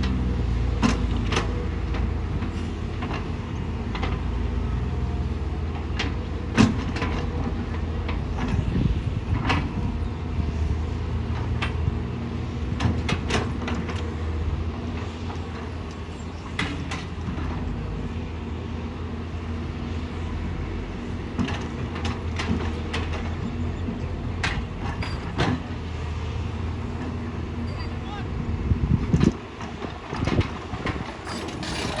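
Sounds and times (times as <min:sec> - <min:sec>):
excavator diesel engine running: 0:30.6 - 0:32.0.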